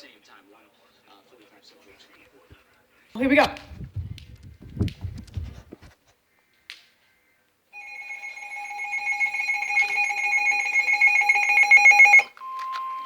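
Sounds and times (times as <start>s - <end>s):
emergency alert attention tone: 7.8s - 12.3s.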